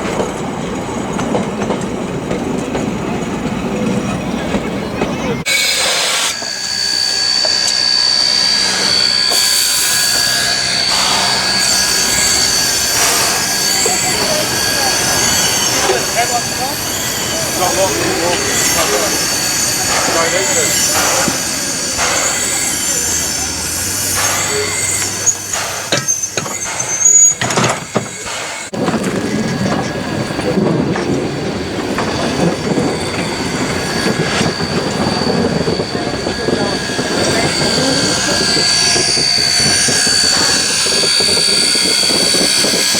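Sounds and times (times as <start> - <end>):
train knocks and clanks: 0.0 - 42.9
train rumbling along rails: 0.0 - 42.9
steam locomotive hissing steam: 5.2 - 42.9
thin high whistle-like tone: 5.5 - 21.3, 32.7 - 42.8.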